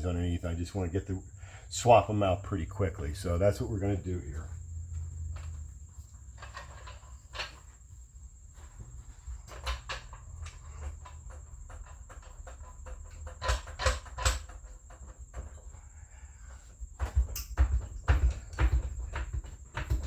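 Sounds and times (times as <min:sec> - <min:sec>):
steady low hum: 0:00.0 - 0:20.0
floor jack clicks and knocks: 0:05.3 - 0:07.8, 0:08.6 - 0:20.0.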